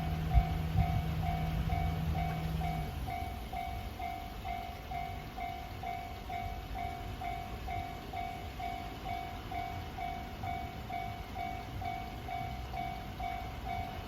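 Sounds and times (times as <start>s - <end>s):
low rumble: 0.0s - 3.7s
level crossing alarm ringing: 0.0s - 14.0s.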